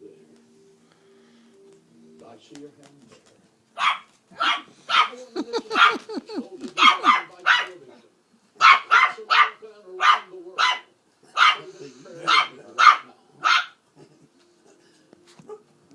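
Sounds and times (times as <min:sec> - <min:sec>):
puppy barking: 0:03.8 - 0:07.8, 0:08.6 - 0:13.8.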